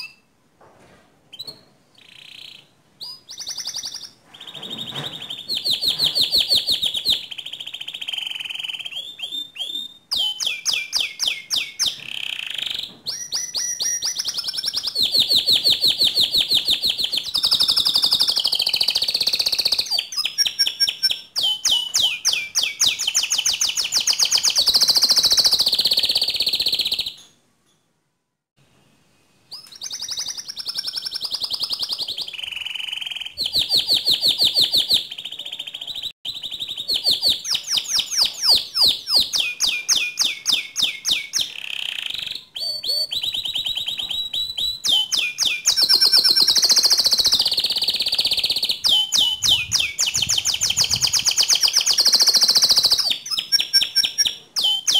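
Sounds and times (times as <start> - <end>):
canary singing trills: 1.3 - 27.4, 29.5 - 54.9.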